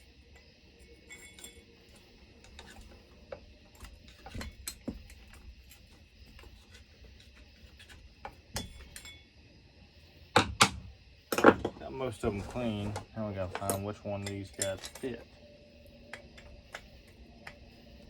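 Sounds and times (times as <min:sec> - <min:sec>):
small hand tools clinking: 0:01.0 - 0:03.0, 0:12.2 - 0:15.3.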